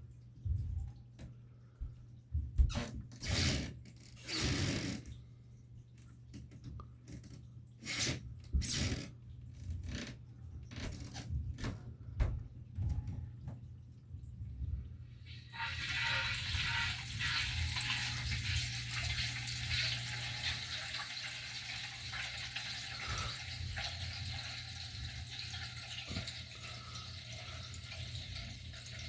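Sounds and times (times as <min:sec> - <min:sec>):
water gurgling and hissing in pipes: 0:15.1 - 0:29.0.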